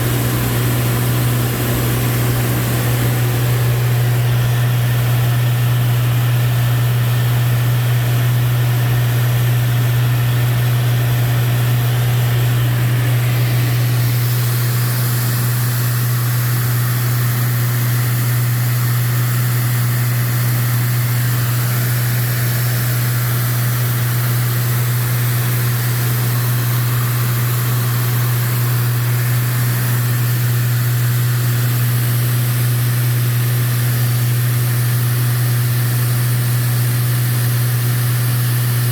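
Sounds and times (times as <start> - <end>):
airflow hiss: 0.0 - 4.4
airplane engine and propeller drone: 0.0 - 38.9.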